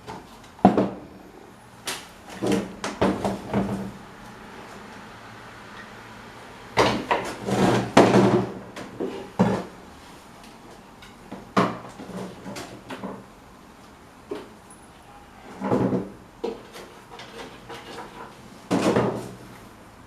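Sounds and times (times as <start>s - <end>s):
clunks and knocks of fan parts: 0.0s - 1.1s, 1.8s - 4.8s, 6.7s - 9.8s, 10.5s - 13.4s, 14.2s - 14.6s, 15.5s - 19.6s.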